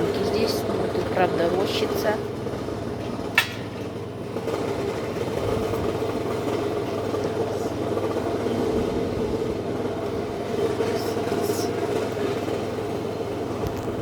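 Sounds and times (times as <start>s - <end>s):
engines humming: 0.0s - 14.0s.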